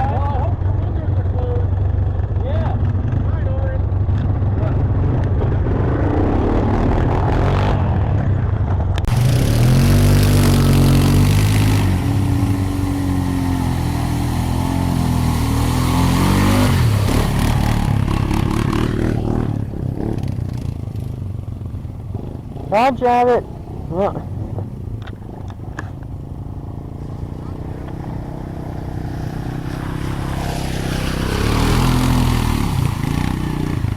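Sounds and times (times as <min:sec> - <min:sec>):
atv engine revving: 0:00.0 - 0:33.9
rushing water: 0:09.1 - 0:21.1, 0:26.2 - 0:33.9.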